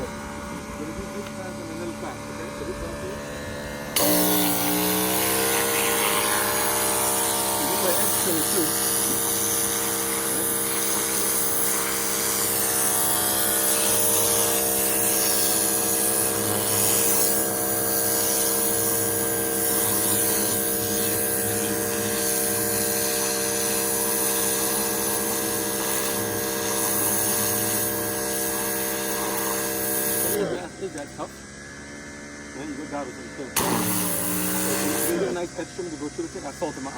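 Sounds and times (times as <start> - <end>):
pressure washer motor drone: 0.0 - 36.9
water jet hissing: 3.8 - 31.3, 33.6 - 36.9.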